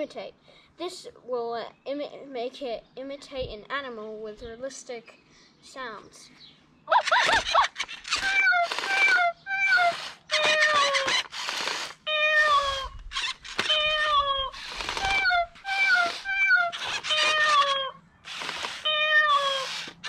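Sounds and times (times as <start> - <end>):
recorded cat meows from speaker: 8.2 - 11.1, 12.1 - 13.0, 13.6 - 18.0, 18.8 - 19.6
short hissy noise: 14.5 - 20.0.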